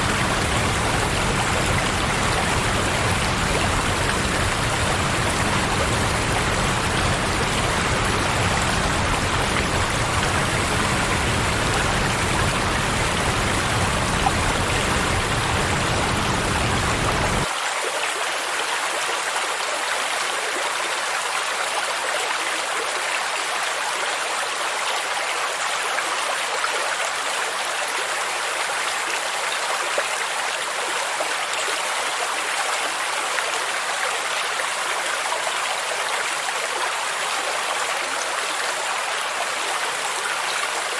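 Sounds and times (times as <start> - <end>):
deep low water rumble: 0.0 - 17.4
stream and waterfall rushing: 0.0 - 18.3.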